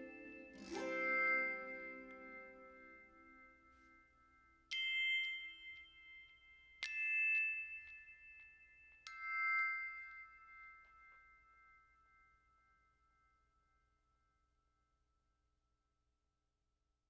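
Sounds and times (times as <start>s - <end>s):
faint sustained ring: 0.0s - 6.7s
ringing bell-like chimes: 0.0s - 14.1s.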